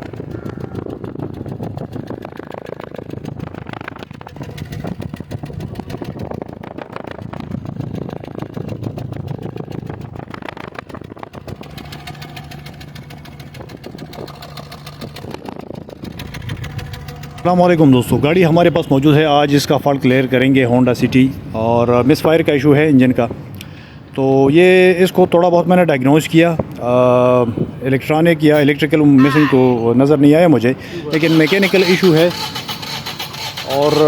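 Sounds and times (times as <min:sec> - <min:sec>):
car engine idling with misfire: 0:00.0 - 0:23.5, 0:30.8 - 0:34.0.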